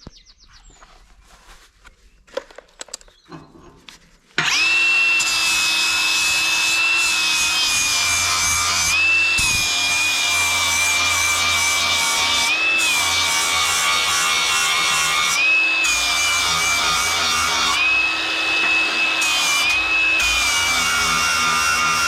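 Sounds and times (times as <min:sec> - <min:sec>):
power tool whining: 0:04.4 - 0:22.0.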